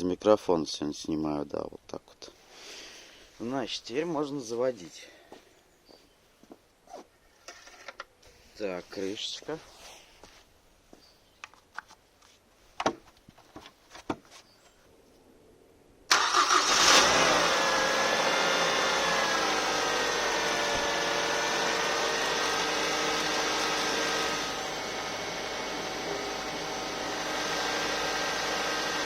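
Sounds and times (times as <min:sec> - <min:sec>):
car engine starting and idling: 0:16.1 - 0:29.0.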